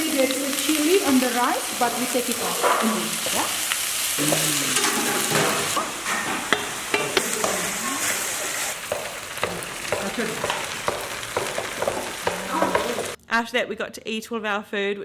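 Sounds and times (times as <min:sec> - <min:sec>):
food sizzling in a pan: 0:00.0 - 0:13.2
utensil clacking against pan: 0:04.2 - 0:13.2.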